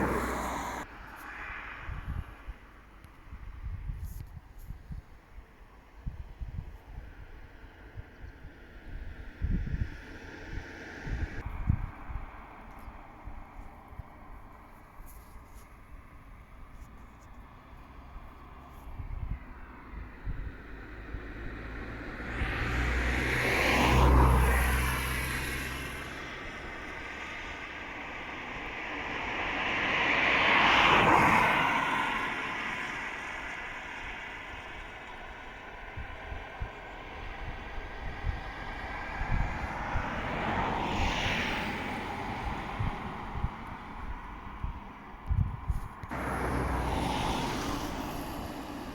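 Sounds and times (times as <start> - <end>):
vehicle passing by: 0.0 - 2.3, 17.4 - 44.9, 45.7 - 48.9
wind buffeting microphone: 1.7 - 17.3, 18.0 - 29.3, 30.6 - 48.9.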